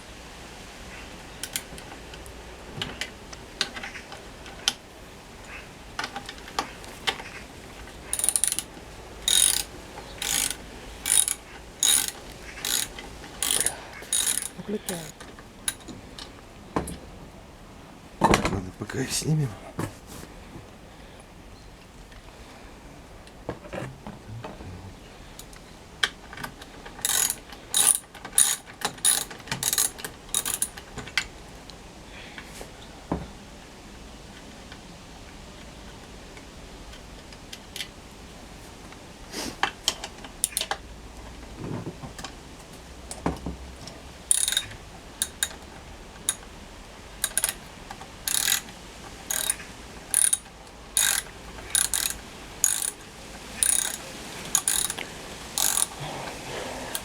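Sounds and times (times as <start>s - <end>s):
ratchet wrench clicking: 8.1s - 15.9s, 27.0s - 30.8s, 44.3s - 45.6s, 47.2s - 47.6s, 48.2s - 53.0s, 53.6s - 55.0s, 55.6s - 56.0s.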